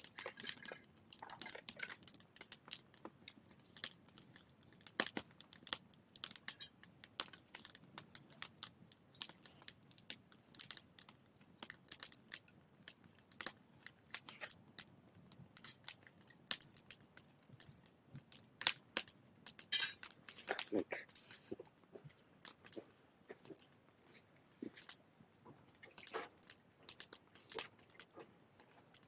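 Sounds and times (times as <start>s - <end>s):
wood fire crackling and popping: 0.0s - 29.0s.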